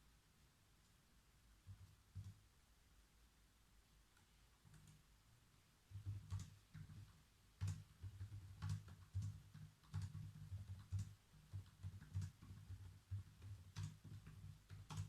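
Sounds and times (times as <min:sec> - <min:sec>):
typing on computer keyboard: 0:01.7 - 0:02.4, 0:04.6 - 0:05.0, 0:05.9 - 0:15.0.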